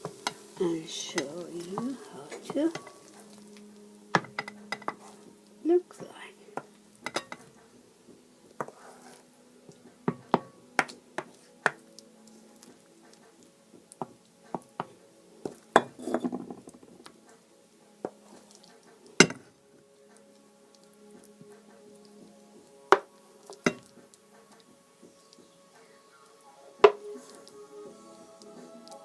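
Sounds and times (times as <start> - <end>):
utensil scraping a pan: 0.0 - 5.3, 7.0 - 7.6, 8.6 - 9.3, 15.5 - 16.7.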